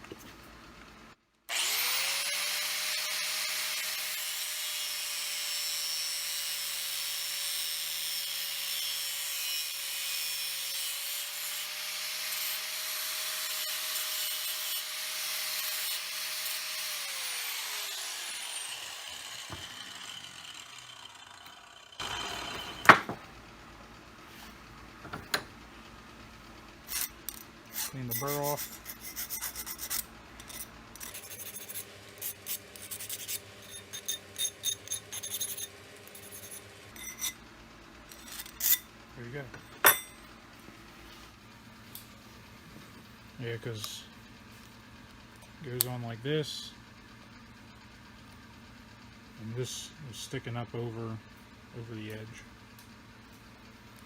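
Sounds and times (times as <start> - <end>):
power tool cutting metal: 1.5 - 23.2, 26.9 - 37.4, 38.1 - 38.9.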